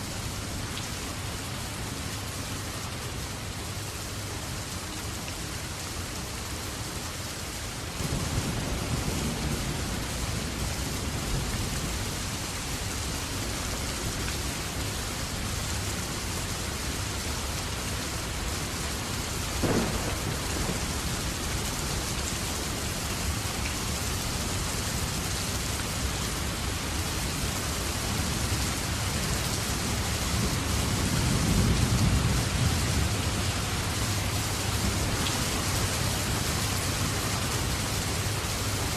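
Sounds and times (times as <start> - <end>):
heavy rain: 0.0 - 38.9
low rolling thunder: 8.0 - 12.1, 19.6 - 21.7, 30.0 - 34.0
sharp thunder crack: 19.6 - 21.0.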